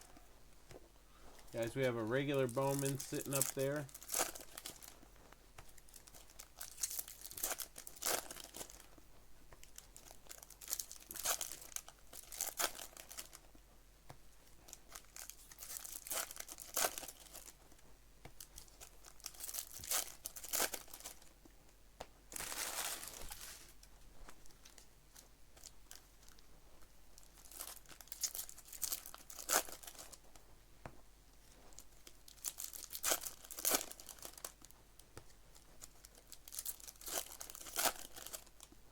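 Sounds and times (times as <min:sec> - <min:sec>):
foil wrappers ripping and crinkling: 0:01.3 - 0:05.0, 0:05.7 - 0:08.9, 0:09.6 - 0:13.4, 0:14.5 - 0:17.6, 0:18.4 - 0:21.3, 0:22.3 - 0:23.9, 0:27.2 - 0:30.2, 0:31.7 - 0:34.7, 0:35.5 - 0:38.7.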